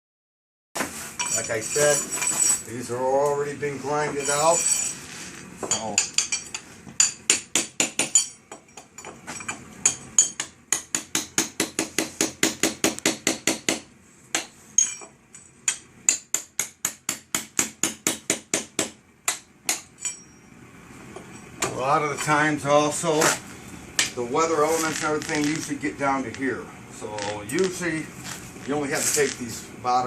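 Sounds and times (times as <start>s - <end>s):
hammer striking metal: 5.6s - 20.5s.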